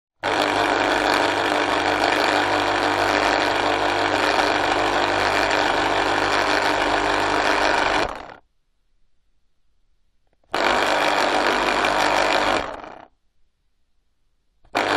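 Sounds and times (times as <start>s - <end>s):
juice extractor motor running: 0.2s - 8.4s, 10.5s - 13.1s, 14.7s - 14.9s.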